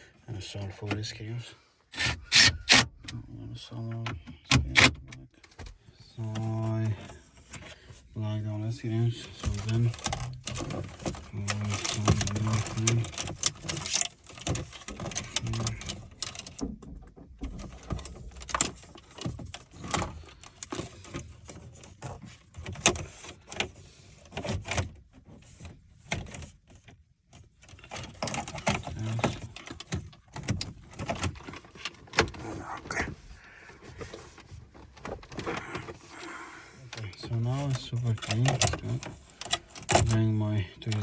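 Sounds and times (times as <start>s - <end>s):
screwdriver whirring: 1.9s - 2.8s.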